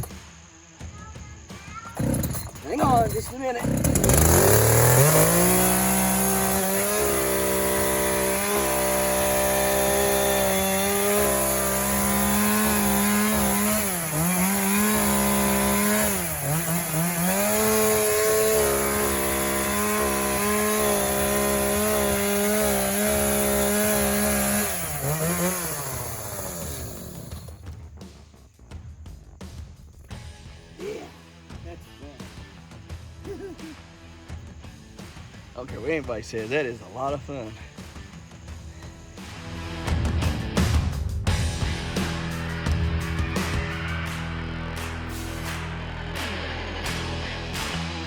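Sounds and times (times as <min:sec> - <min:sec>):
chainsaw cutting pumpkin: 0:01.7 - 0:27.6.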